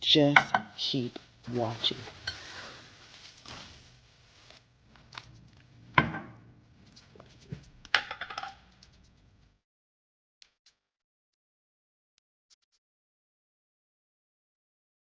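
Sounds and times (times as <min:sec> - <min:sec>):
soft rustling: 0:01.1 - 0:05.9
objects knocking and clicking: 0:07.0 - 0:09.1.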